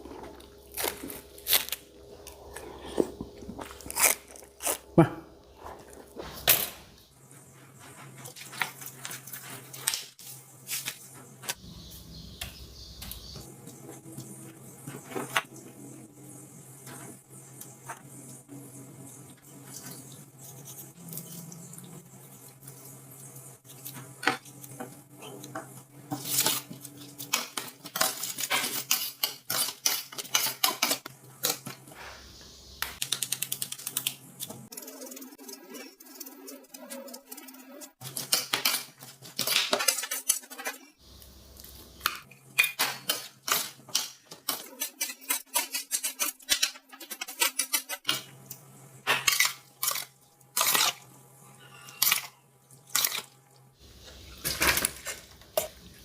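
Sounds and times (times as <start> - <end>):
utensils clinking against dishes: 25.5 - 31.8, 42.0 - 48.4.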